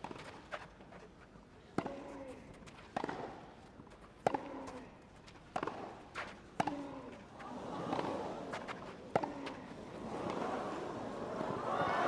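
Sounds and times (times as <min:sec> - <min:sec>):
racket striking tennis ball: 0:05.5 - 0:05.9.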